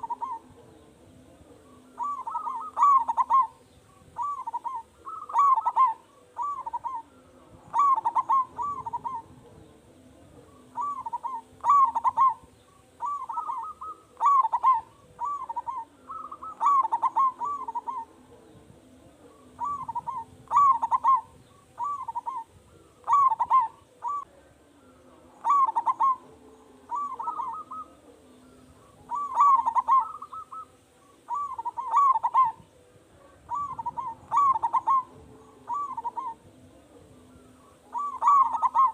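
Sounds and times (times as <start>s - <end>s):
dove cooing: 0.0s - 38.9s.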